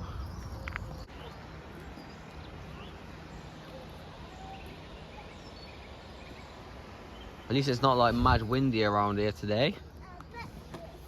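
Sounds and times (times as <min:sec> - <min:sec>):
faint bird chirps: 0:00.0 - 0:07.8
outdoor background hiss: 0:00.0 - 0:11.0.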